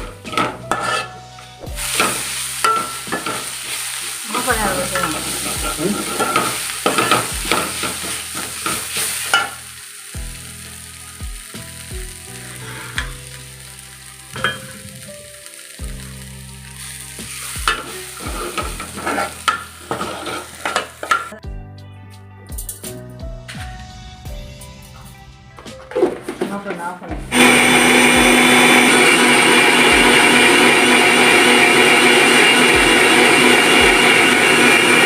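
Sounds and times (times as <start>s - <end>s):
spatula scraping a pan: 0.0s - 9.6s, 12.3s - 13.2s, 16.8s - 21.3s
food sizzling in hot oil: 0.0s - 21.4s, 27.3s - 35.0s.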